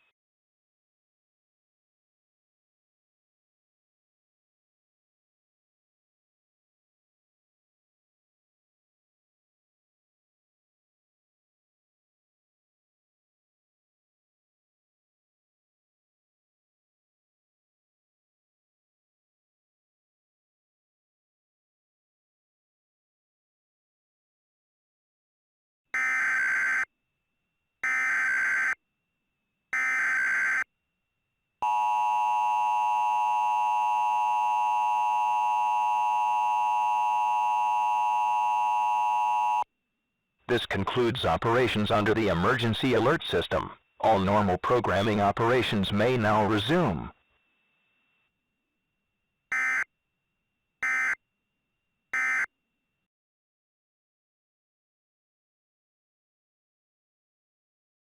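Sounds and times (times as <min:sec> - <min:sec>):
two-tone attention signal: 0:52.2 - 0:52.5.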